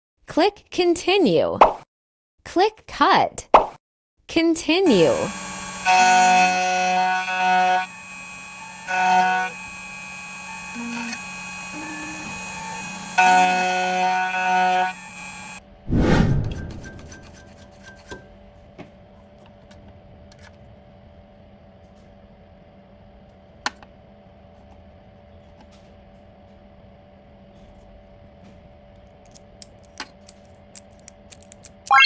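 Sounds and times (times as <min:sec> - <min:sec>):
faint machine hum: 0:16.8 - 0:31.9.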